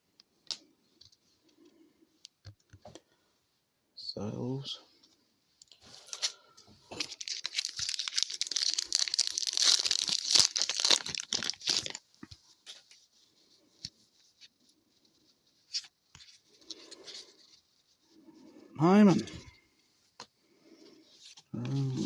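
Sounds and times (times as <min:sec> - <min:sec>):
card pack wrapper tearing and crinkling: 0:06.9 - 0:12.1.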